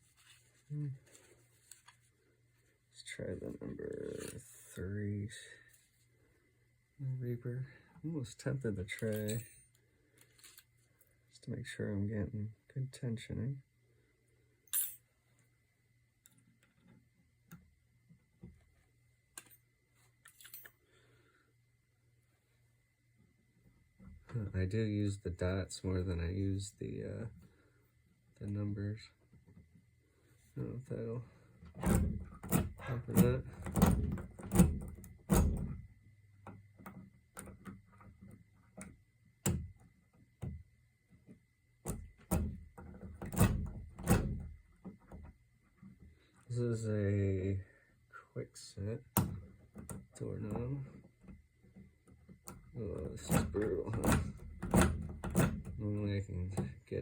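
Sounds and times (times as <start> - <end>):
lock picking ticks and scrapes: 52.3 - 55.8
doorknob knocks: 53.3 - 55.8.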